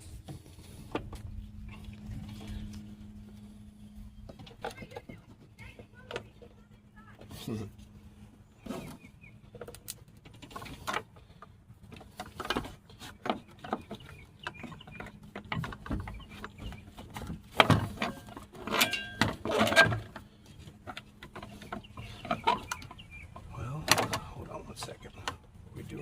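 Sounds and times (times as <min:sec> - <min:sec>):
faint steady hum: 0:00.0 - 0:26.0
tools and parts clattering: 0:08.6 - 0:24.3.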